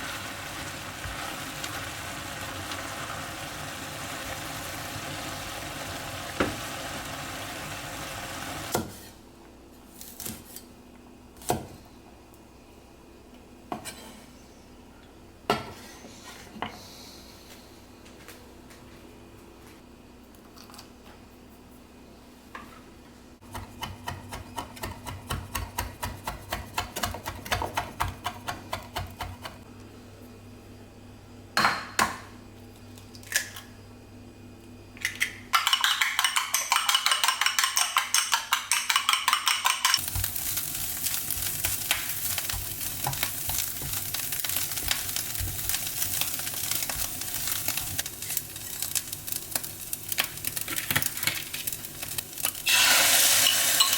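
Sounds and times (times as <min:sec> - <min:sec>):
food sizzling in hot pan: 0:00.0 - 0:08.7, 0:40.0 - 0:53.9.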